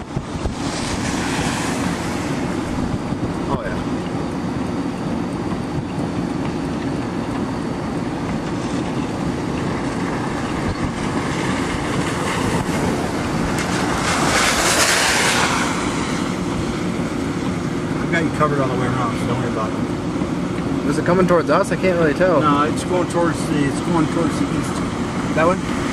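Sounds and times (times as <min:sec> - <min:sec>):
loud rushing noise: 0:00.0 - 0:04.5, 0:08.5 - 0:20.4
vehicle road noise rumble: 0:00.0 - 0:25.9
wind noise: 0:00.0 - 0:25.9.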